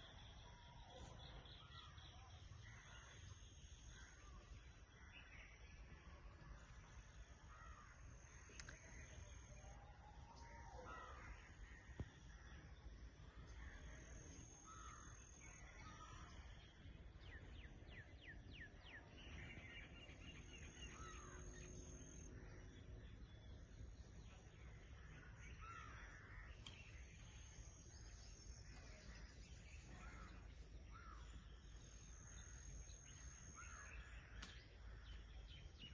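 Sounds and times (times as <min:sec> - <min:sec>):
low steady rumble: 0:02.6 - 0:35.9
birds calling: 0:10.4 - 0:35.9.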